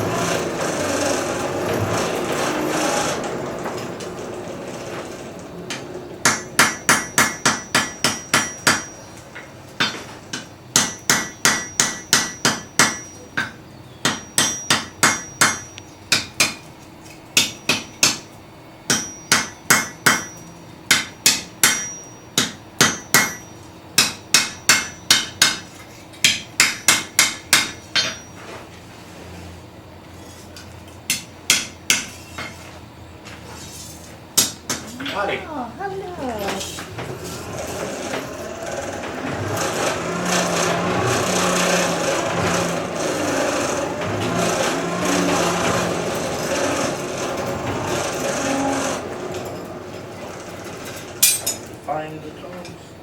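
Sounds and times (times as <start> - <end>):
hammer striking metal on anvil: 6.2 - 9.1, 9.8 - 16.6, 17.4 - 18.3, 18.9 - 28.3, 31.1 - 32.6.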